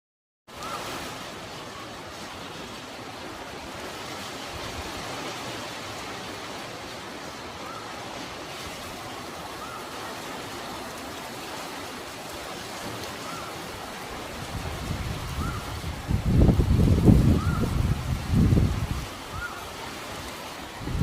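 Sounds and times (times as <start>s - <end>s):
heavy rain hiss: 0.6s - 21.0s
wind buffeting microphone: 14.1s - 19.5s, 20.1s - 21.0s.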